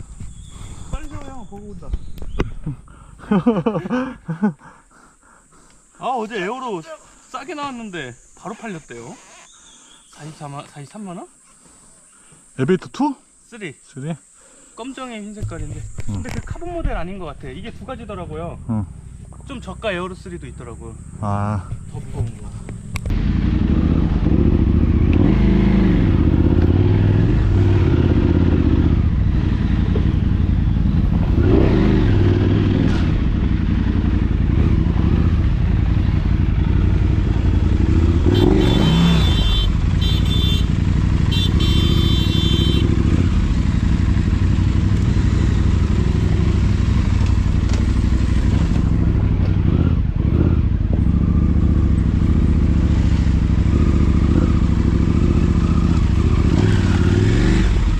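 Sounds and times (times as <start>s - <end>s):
motorcycle engine running: 15.4s - 57.9s.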